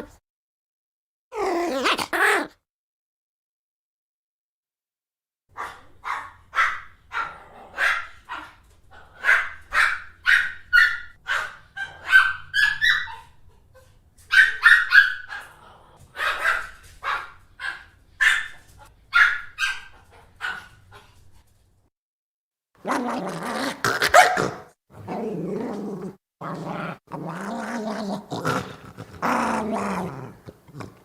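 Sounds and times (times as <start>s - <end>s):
small dog yapping: 1.3s - 2.5s, 22.8s - 24.7s.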